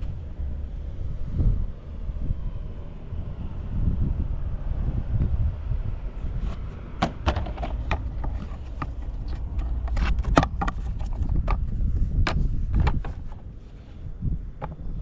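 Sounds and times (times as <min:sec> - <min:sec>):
irregular clicks and knocks: 0:07.0 - 0:13.5, 0:14.6 - 0:14.9.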